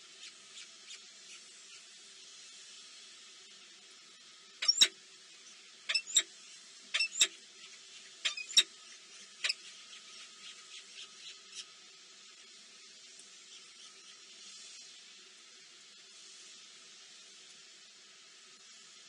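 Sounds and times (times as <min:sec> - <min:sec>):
faint steady hiss: 0:00.0 - 0:19.0
small bird chirping: 0:04.6 - 0:04.9, 0:05.9 - 0:06.2, 0:07.0 - 0:07.3, 0:08.2 - 0:08.6.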